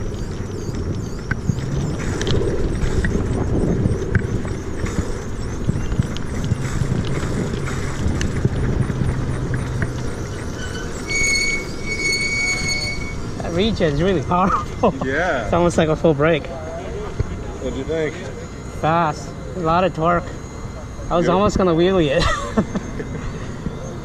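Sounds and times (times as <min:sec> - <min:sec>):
scattered clicks: 0:00.0 - 0:11.8
wind rumbling on microphone: 0:00.0 - 0:17.7
electric motorbike high whine: 0:00.0 - 0:24.0.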